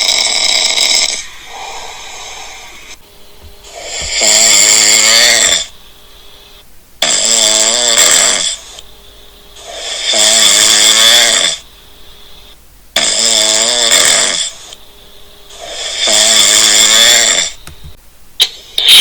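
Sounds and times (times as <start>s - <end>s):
cat snoring: 0.0s - 3.0s, 3.6s - 5.7s, 7.0s - 8.8s, 9.6s - 11.7s, 13.0s - 14.8s, 15.5s - 17.6s.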